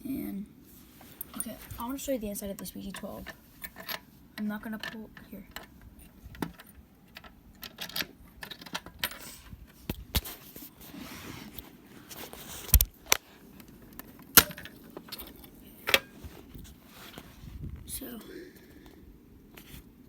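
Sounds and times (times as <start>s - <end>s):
metallic clicks and knocks: 2.6s - 9.5s.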